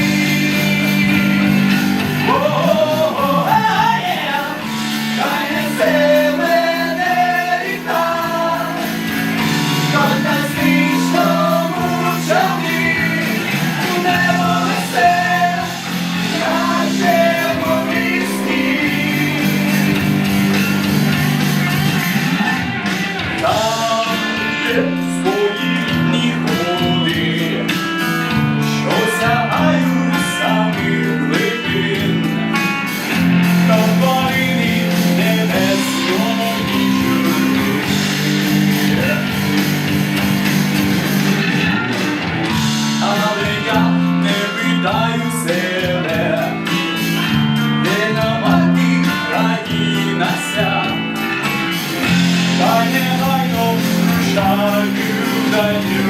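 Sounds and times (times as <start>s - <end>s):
bending melody line: 0.0s - 56.0s
guitar: 0.0s - 56.0s.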